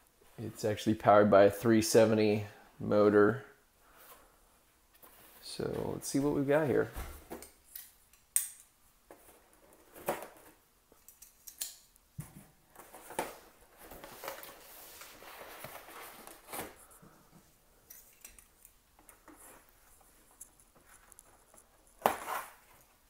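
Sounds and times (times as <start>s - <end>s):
soft rustling: 3.8s - 7.4s, 12.7s - 23.0s.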